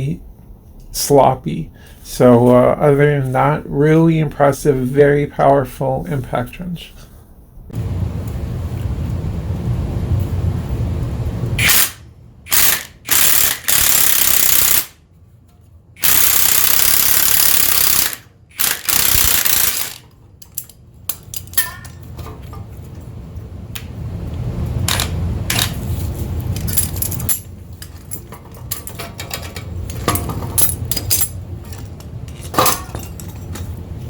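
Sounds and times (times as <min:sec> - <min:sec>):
impact wrench hammering: 0:11.6 - 0:14.9, 0:16.0 - 0:20.0.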